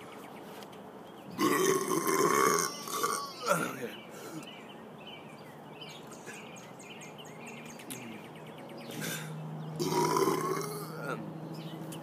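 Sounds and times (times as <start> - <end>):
man burping: 1.4 - 3.9, 9.0 - 11.2.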